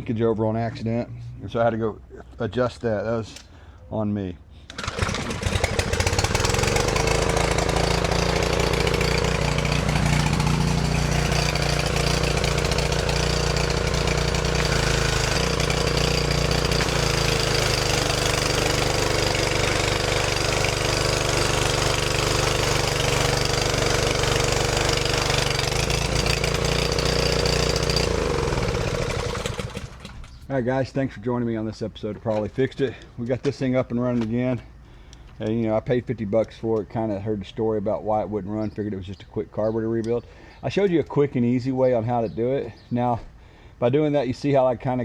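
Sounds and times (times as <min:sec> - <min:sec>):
pressure washer engine running: 0:04.7 - 0:30.4.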